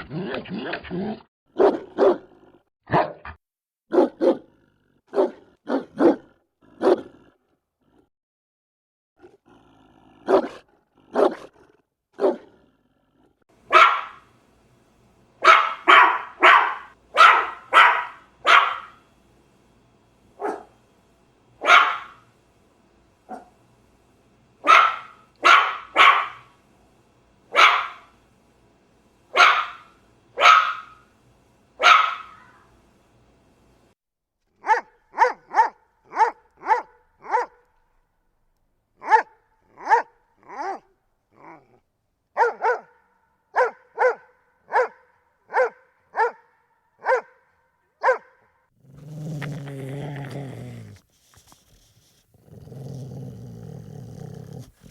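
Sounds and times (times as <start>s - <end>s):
large dog barking: 1.5s - 3.2s, 3.9s - 4.5s, 5.1s - 7.2s, 10.2s - 11.6s, 12.2s - 12.6s, 13.6s - 14.3s, 15.4s - 19.0s, 20.4s - 20.8s, 21.6s - 22.2s, 23.3s - 23.6s, 24.6s - 26.6s, 27.5s - 28.2s, 29.3s - 31.0s, 31.8s - 32.7s, 34.6s - 37.6s, 39.0s - 40.9s, 42.4s - 51.0s, 52.3s - 54.9s
small dog barking: 1.6s - 2.3s, 2.9s - 3.2s, 3.9s - 4.5s, 5.1s - 7.1s, 10.2s - 11.5s, 12.2s - 12.5s, 13.6s - 14.3s, 15.4s - 19.0s, 20.4s - 20.8s, 21.6s - 22.2s, 23.3s - 23.6s, 24.6s - 26.6s, 27.5s - 28.1s, 29.3s - 31.1s, 31.8s - 32.7s, 34.6s - 37.6s, 39.0s - 41.6s, 42.4s - 54.9s.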